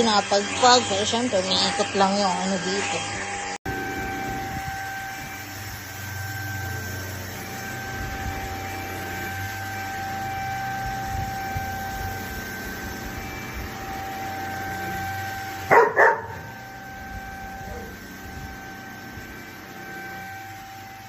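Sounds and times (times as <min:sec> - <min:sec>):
handheld vacuum whining: 0:00.0 - 0:21.0
dog barking: 0:15.7 - 0:16.5.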